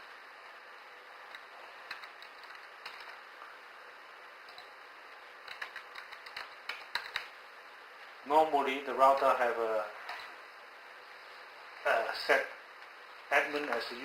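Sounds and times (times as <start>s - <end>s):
faint steady hiss: 0.0s - 14.0s
keyboard keys clicking: 1.3s - 3.2s, 5.4s - 7.3s.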